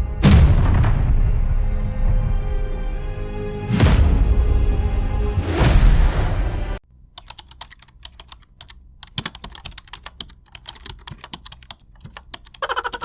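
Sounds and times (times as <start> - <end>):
music: 0.0 - 6.8
rapid clicks: 7.1 - 13.0.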